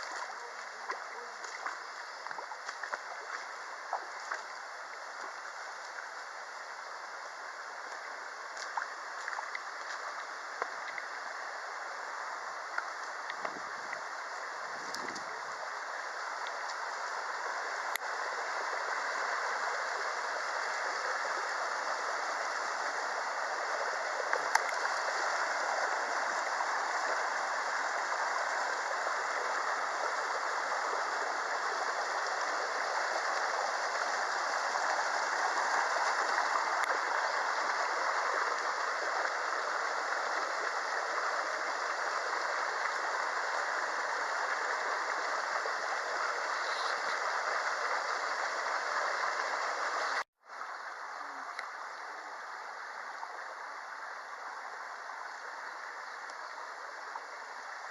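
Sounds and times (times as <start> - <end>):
stream rushing over rocks: 0.0 - 57.9
faint sharp clicks: 24.3 - 24.8, 51.5 - 51.7.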